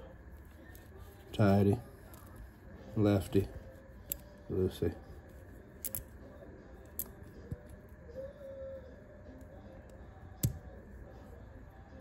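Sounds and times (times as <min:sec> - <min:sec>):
metal multi-tool clicks: 0:05.8 - 0:06.1.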